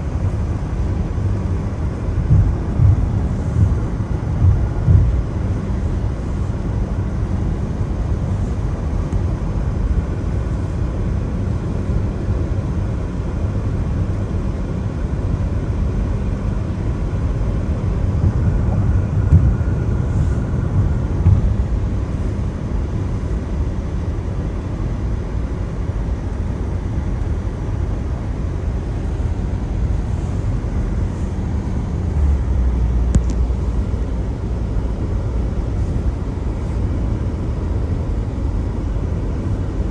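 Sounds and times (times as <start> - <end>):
deep steady hum: 0.0 - 39.9
tyre rumble on wet road: 0.7 - 6.6, 17.6 - 22.3.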